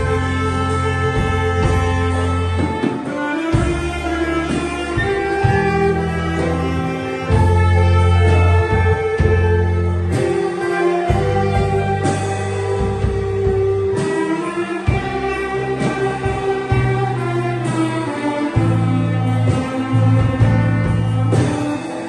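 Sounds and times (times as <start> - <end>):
bass line: 0.0 - 22.0
string melody: 0.0 - 22.0.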